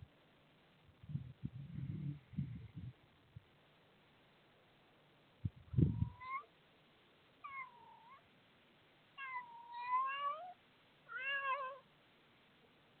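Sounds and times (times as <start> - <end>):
cat meowing: 6.0 - 6.5, 7.4 - 8.2, 9.2 - 11.8.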